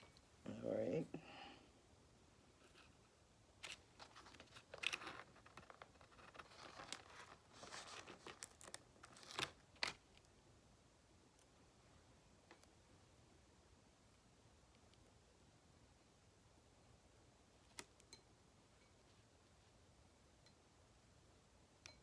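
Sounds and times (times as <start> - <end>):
crinkling and tearing rustles: 3.6 - 10.2.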